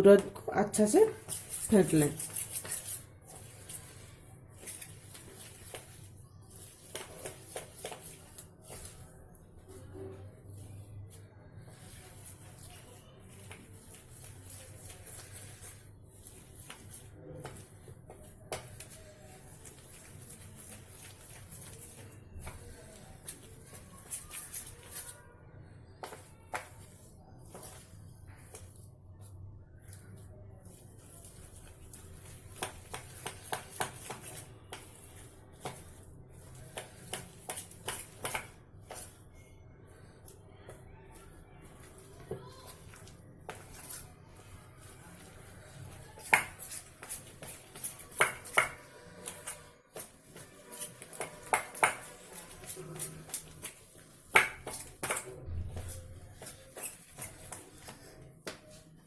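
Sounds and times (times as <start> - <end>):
batter squelching in a bowl: 0.7 - 59.0.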